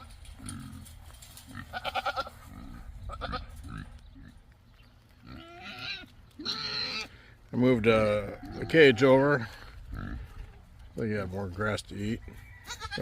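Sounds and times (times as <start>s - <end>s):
goat bleating: 1.5s - 2.5s, 3.1s - 3.8s, 5.2s - 7.2s, 12.6s - 13.0s.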